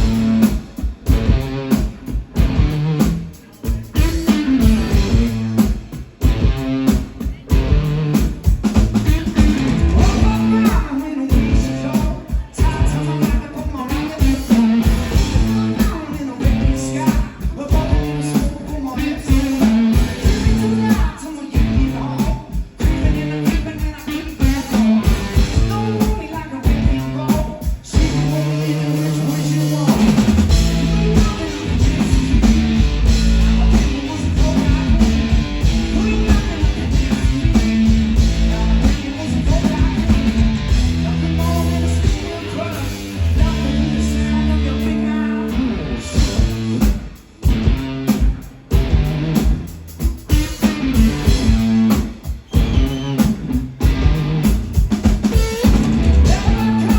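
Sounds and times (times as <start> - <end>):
distorted electric guitar: 0.0 - 56.9
drum kit: 0.0 - 56.9
person singing: 9.0 - 46.6, 55.4 - 56.9.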